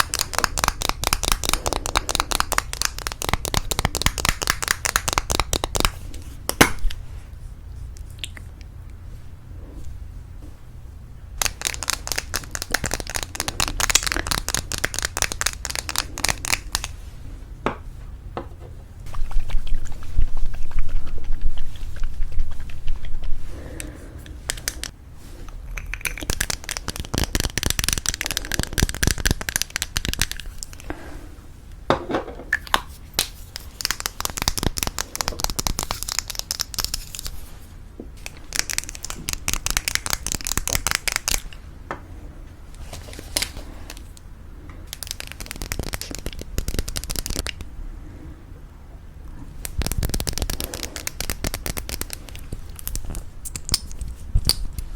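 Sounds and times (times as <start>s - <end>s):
fingernails tapping on lipstick tubes: 0.0s - 6.8s, 11.4s - 16.9s.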